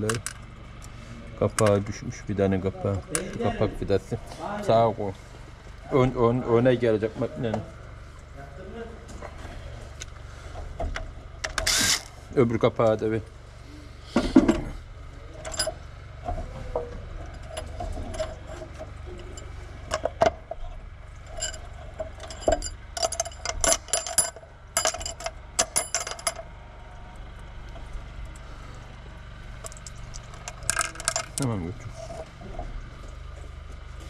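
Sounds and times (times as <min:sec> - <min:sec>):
metal tools clinking: 0:15.3 - 0:26.5, 0:29.6 - 0:32.4.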